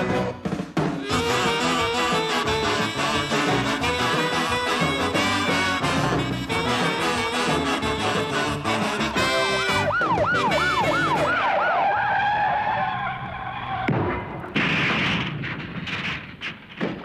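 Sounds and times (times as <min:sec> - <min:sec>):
brass music: 0:00.0 - 0:11.8
siren-like wail: 0:09.0 - 0:13.9.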